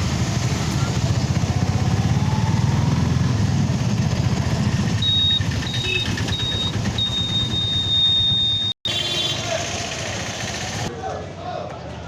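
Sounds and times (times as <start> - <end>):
vehicle engine and road rumble: 0.0 - 10.9
high-pitched electronic beeps: 5.0 - 8.8.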